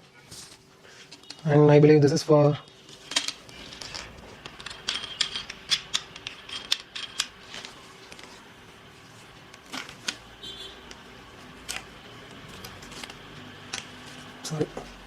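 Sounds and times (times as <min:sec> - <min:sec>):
plastic pipes clicking and scraping: 0:02.6 - 0:08.4.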